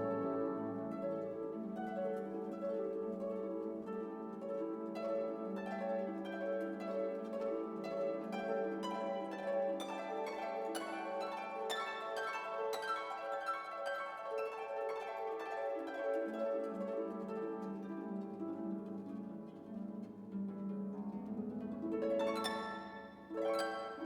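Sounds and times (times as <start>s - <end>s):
plucked string notes: 0.0s - 1.7s.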